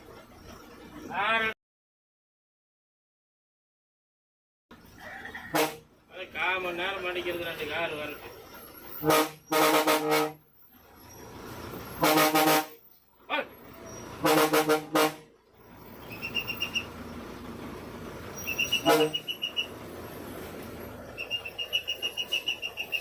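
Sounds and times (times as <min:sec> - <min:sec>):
vehicle engine running: 0:04.7 - 0:23.0
vehicle horn honking: 0:05.5 - 0:05.8, 0:09.0 - 0:10.4, 0:12.0 - 0:12.8, 0:14.2 - 0:15.3, 0:18.4 - 0:19.7
high bird chirps: 0:15.7 - 0:17.2, 0:18.3 - 0:19.8, 0:21.1 - 0:23.0.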